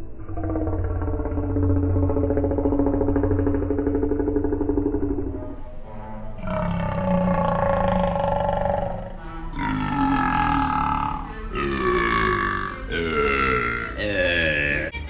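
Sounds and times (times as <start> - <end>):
man burping sped up: 11.6 - 15.0.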